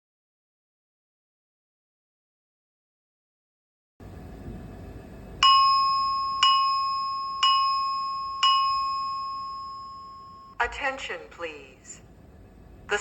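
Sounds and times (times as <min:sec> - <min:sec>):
fire alarm chime strikes: 0:05.4 - 0:10.6.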